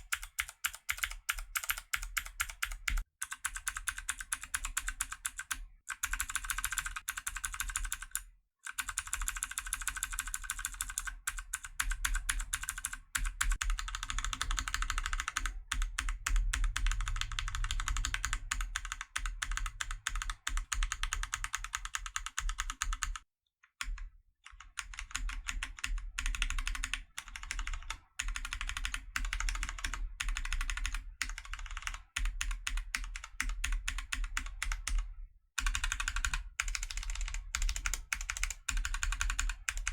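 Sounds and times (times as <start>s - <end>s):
mechanical keyboard typing: 0.0s - 23.2s, 23.8s - 39.9s.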